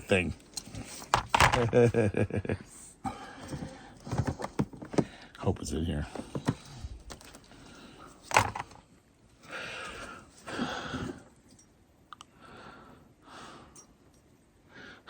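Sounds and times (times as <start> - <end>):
items shuffled and rustled: 0.2 - 2.1, 3.2 - 5.2, 6.0 - 11.7.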